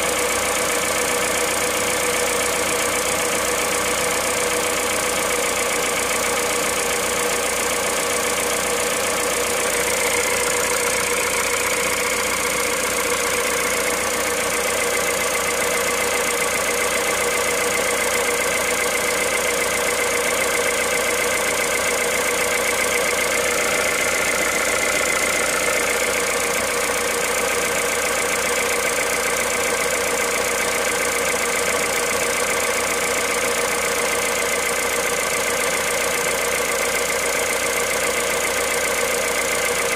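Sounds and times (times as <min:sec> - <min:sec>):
car engine idling with ticking: 0:00.0 - 0:39.9.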